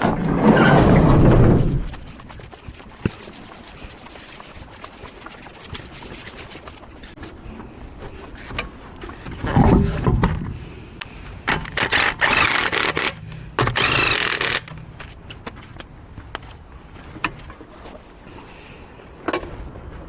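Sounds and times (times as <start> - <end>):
impact wrench spinning wheel nuts: 11.8 - 14.7.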